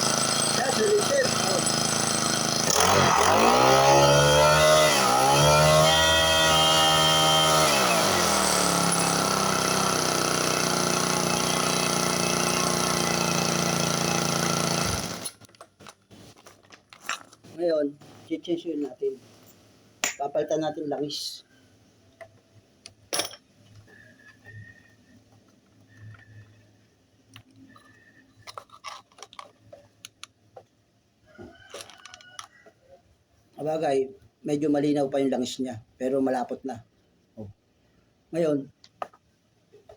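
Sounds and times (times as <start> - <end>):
small grass cutter engine: 0.0 - 15.4.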